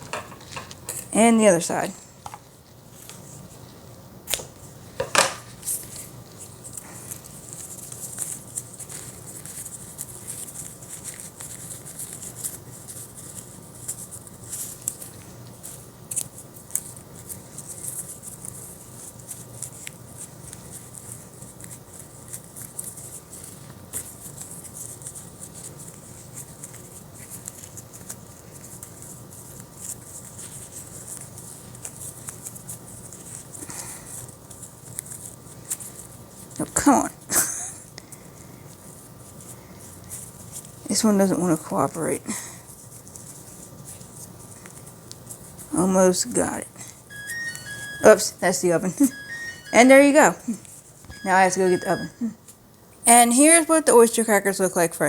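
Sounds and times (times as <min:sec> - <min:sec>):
ribbon and fabric rustling: 0:05.5 - 0:37.0.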